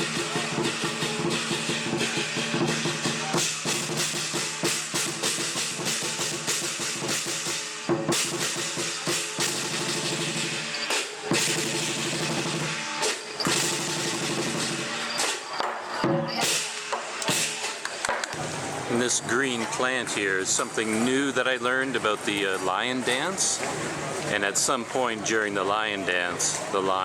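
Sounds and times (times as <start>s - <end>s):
big drum beaten fast: 0.0s - 15.2s, 16.0s - 17.8s
cymbals clashing: 0.0s - 20.0s.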